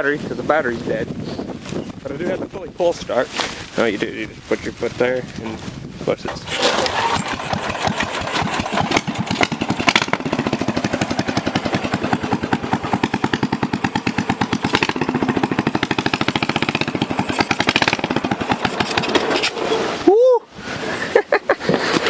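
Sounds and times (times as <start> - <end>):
lawn mower engine running: 6.3 - 20.0, 21.6 - 22.0.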